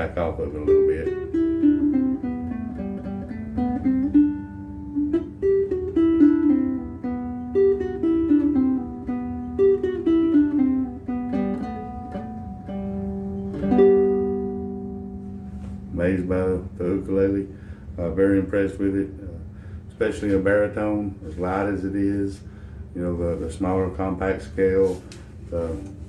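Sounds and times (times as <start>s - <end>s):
ukulele fingerpicked: 0.0s - 16.7s.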